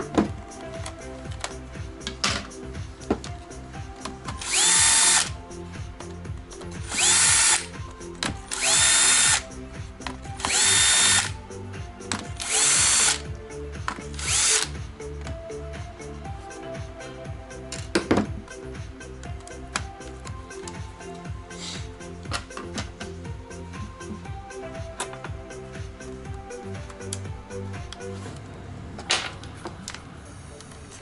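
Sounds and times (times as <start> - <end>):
background music: 0.0 - 31.0
power screwdriver whining: 4.3 - 5.4, 6.9 - 7.8, 8.4 - 9.4, 10.4 - 11.4, 12.4 - 13.2, 14.1 - 14.7.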